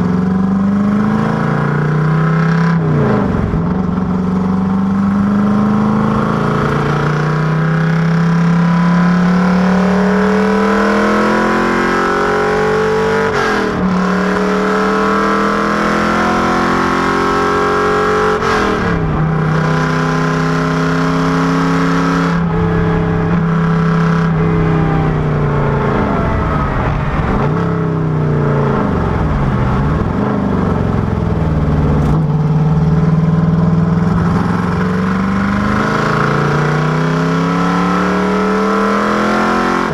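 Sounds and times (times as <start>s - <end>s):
car engine accelerating hard: 0.0s - 39.9s.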